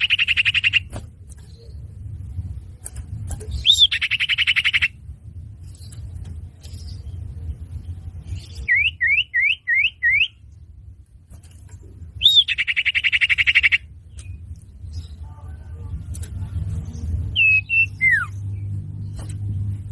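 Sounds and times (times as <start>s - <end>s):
low rumble: 0.9s - 3.9s, 4.9s - 8.7s, 13.8s - 19.9s.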